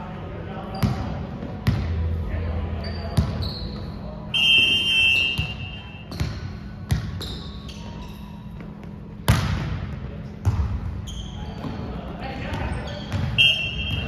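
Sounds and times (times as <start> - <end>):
sneaker squeaks on court floor: 0.7 - 1.8, 2.8 - 8.9, 10.4 - 14.0
referee's whistle blast: 4.3 - 5.9, 13.4 - 14.0.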